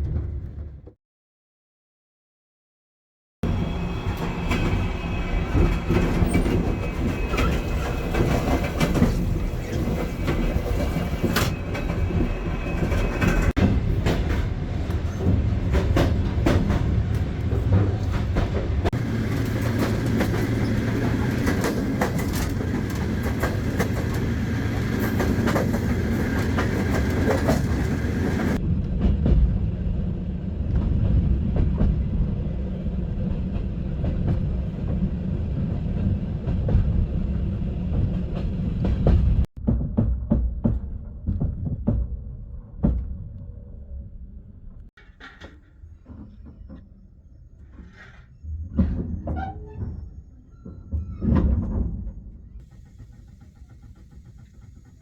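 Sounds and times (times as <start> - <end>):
train carriages rumbling on rails: 3.4 - 43.2, 45.0 - 55.0
wheels clacking over rail joints: 3.5 - 29.4.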